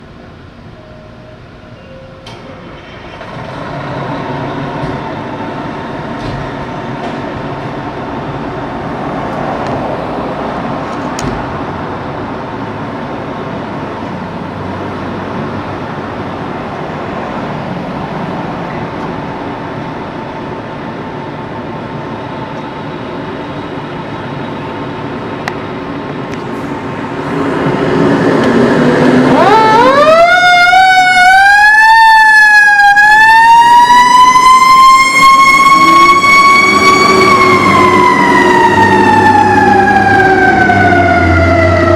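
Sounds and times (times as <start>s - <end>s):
fire truck engine running: 2.3s - 41.9s
siren wailing: 28.8s - 41.9s.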